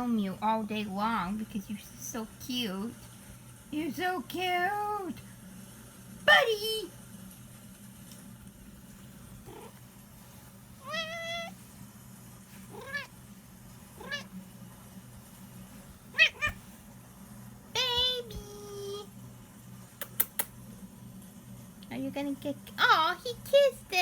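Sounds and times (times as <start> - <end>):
cat meowing: 9.4 - 9.8, 10.8 - 11.7, 12.6 - 13.2, 13.9 - 14.4, 16.0 - 16.7.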